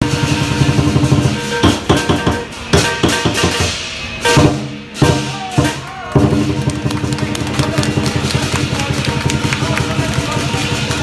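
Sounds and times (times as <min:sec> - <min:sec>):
cymbals clashing: 0:00.0 - 0:07.2
drum beating fast: 0:00.0 - 0:11.0.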